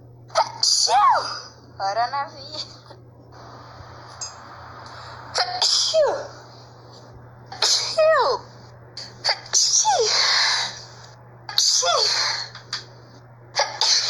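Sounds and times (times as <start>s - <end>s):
person sneezing: 7.6s - 8.1s, 13.6s - 14.0s.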